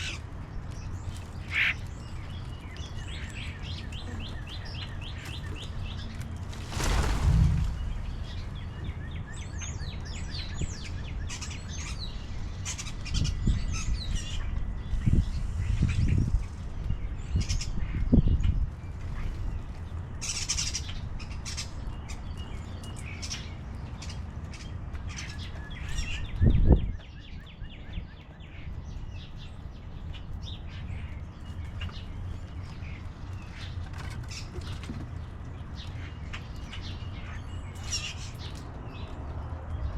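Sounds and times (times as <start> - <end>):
small songbirds chirping: 0.0 - 39.9
short low rumbles: 6.6 - 9.1.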